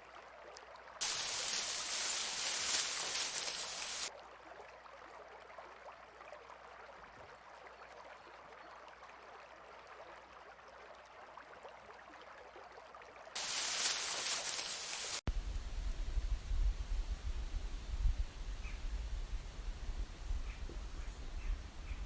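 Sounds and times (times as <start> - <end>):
rush of water: 1.0 - 4.2, 13.4 - 15.2.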